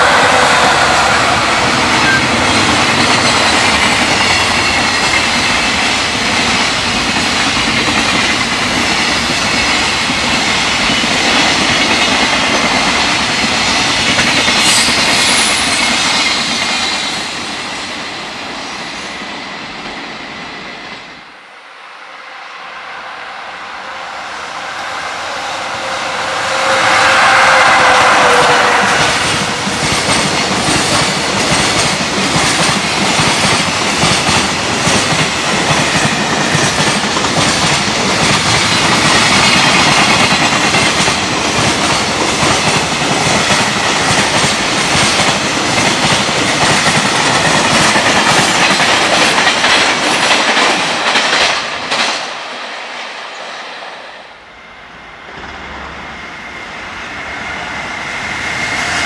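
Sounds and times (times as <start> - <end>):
quiet train rumble: 0.0 - 59.0
train wheels clattering over rail joints: 28.9 - 52.5.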